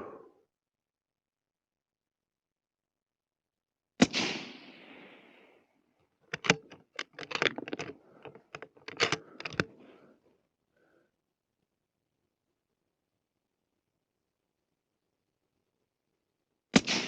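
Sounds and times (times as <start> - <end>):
suppressed rifle shot: 4.0 - 4.9, 16.8 - 17.0
rifle clicks and knocks: 6.3 - 9.8.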